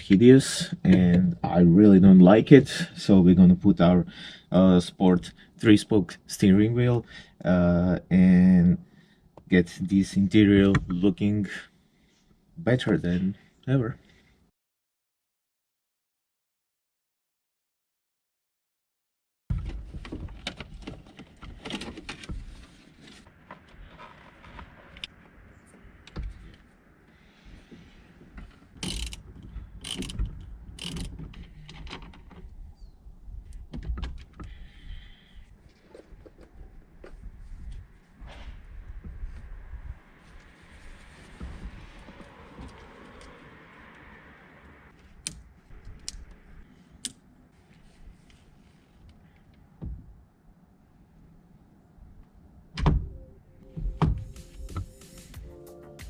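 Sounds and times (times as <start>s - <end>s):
mechanical clicks and knocks: 28.8s - 32.4s
heavy thump: 53.8s - 54.8s.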